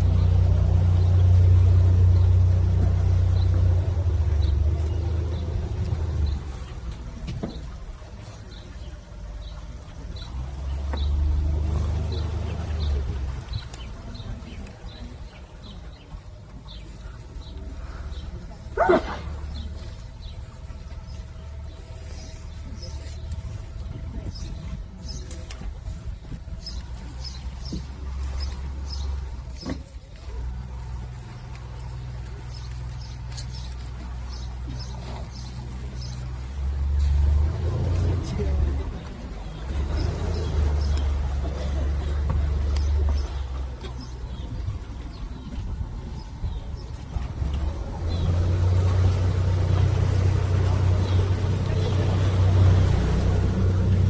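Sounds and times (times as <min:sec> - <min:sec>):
boat engine rumble: 0:00.0 - 0:54.0
small birds chirping: 0:00.0 - 0:54.0.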